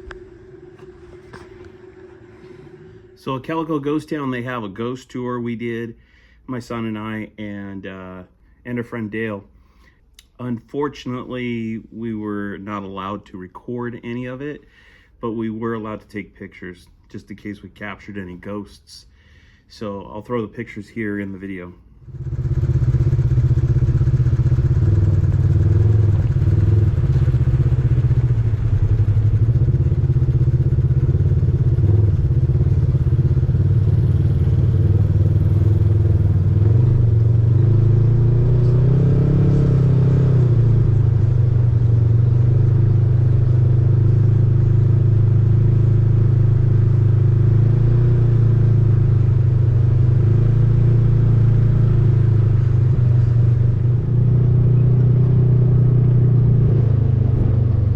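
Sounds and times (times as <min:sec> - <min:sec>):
vehicle engine running: 0:00.0 - 0:04.0, 0:22.0 - 0:57.9.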